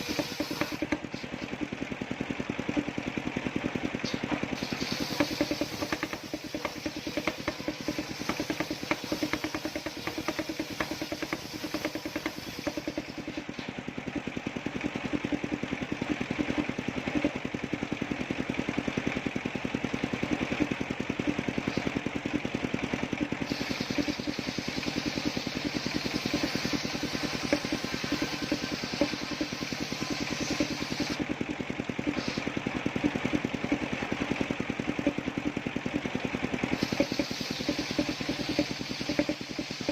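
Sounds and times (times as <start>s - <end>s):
saw cutting through wood: 0.0s - 1.8s, 4.0s - 13.8s, 23.4s - 31.2s, 36.7s - 39.9s
small engine running: 0.0s - 39.9s
hissing noise: 4.6s - 13.4s, 23.4s - 31.2s, 36.8s - 39.9s.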